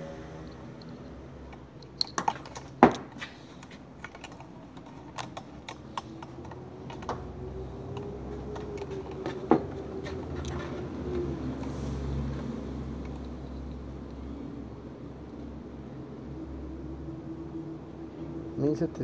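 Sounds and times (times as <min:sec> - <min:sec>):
small clicks and taps of handling: 0:00.8 - 0:07.3.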